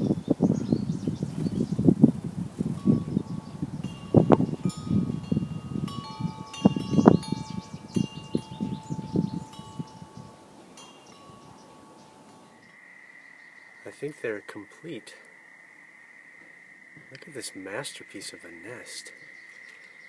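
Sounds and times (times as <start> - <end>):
wind chimes ringing: 2.7 - 12.7.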